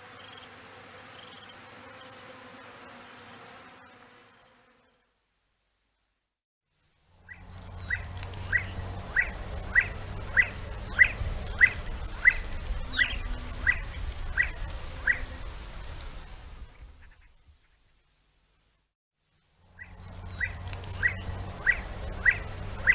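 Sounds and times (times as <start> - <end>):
bird chirping: 0.2 - 0.5, 1.2 - 2.2, 7.2 - 15.4, 19.7 - 22.9.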